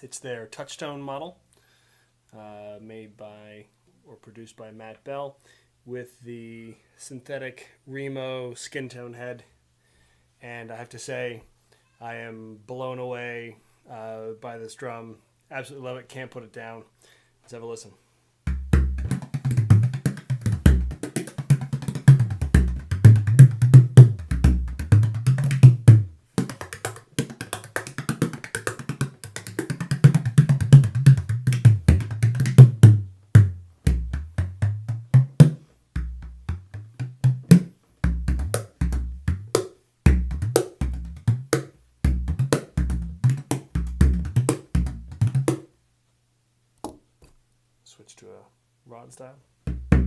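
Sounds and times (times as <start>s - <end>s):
frame drum played in fast rhythms: 18.5s - 45.6s, 49.7s - 50.0s.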